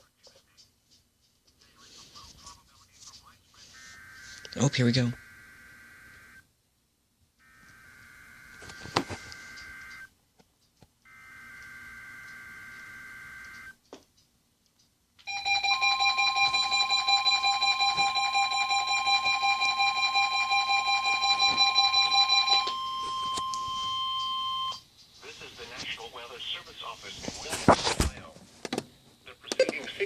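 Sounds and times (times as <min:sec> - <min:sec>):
steady warning alarm tone: 0:03.7 - 0:06.5, 0:07.4 - 0:10.1, 0:11.1 - 0:13.8, 0:15.3 - 0:24.9
digital data bursts: 0:03.8 - 0:06.4
rapid pulsing alarm beeps: 0:03.8 - 0:06.4, 0:07.4 - 0:10.1, 0:11.1 - 0:13.8, 0:15.3 - 0:24.8
high single beep: 0:22.6 - 0:24.8.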